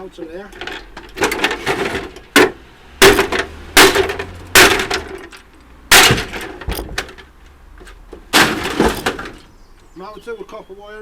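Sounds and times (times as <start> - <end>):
sharp metallic knocks: 0.6 - 7.3, 8.2 - 9.5.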